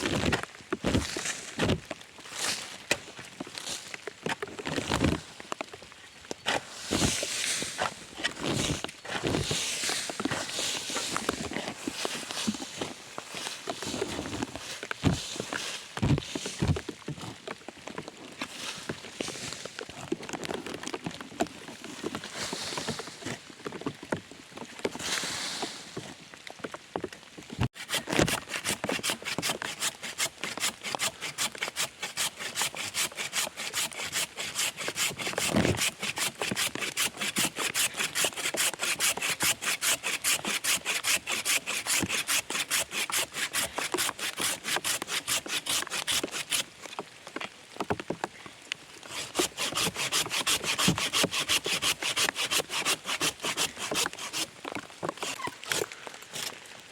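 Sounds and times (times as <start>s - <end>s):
hand saw cutting wood: 27.7s - 46.7s, 49.1s - 56.5s.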